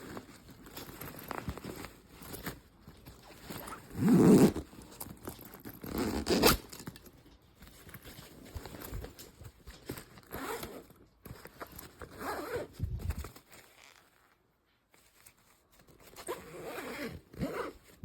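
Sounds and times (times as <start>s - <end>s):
backpack zipper rasping: 3.5s - 5.0s, 5.6s - 6.8s, 10.2s - 10.9s, 12.0s - 14.0s, 16.2s - 17.8s.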